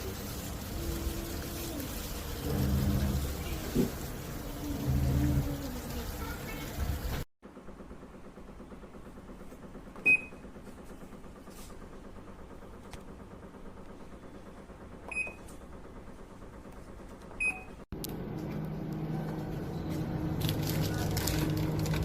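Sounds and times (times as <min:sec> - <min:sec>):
washing machine short beeps: 0:10.0 - 0:10.5, 0:15.1 - 0:15.5, 0:17.4 - 0:17.8.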